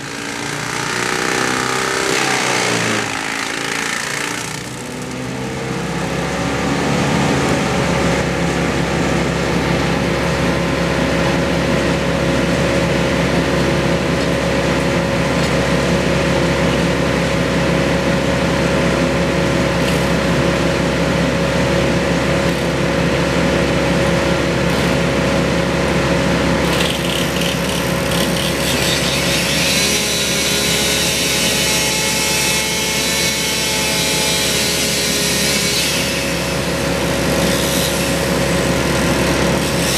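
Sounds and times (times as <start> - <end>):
gas engine cutting wood: 0.0 - 7.6, 24.6 - 39.9.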